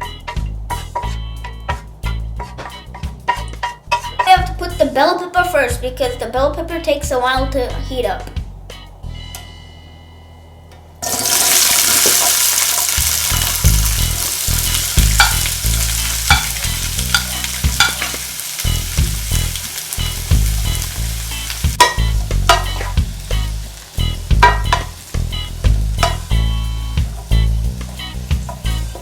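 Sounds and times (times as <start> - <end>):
peppers sizzling in oil: 0.0 - 4.4, 11.0 - 29.0
utensil scraping a pan: 0.3 - 4.4, 11.0 - 26.3.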